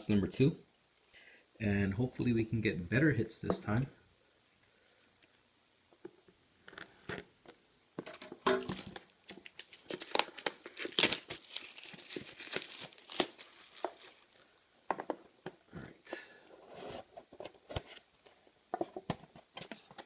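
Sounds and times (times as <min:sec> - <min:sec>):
plastic wrapping crinkling and tearing: 0:08.1 - 0:14.6.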